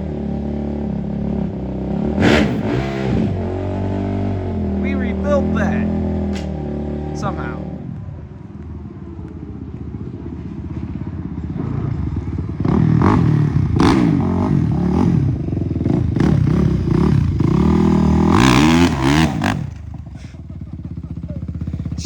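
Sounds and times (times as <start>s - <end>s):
dirt bike engines revving: 1.8s - 8.0s, 11.4s - 22.0s.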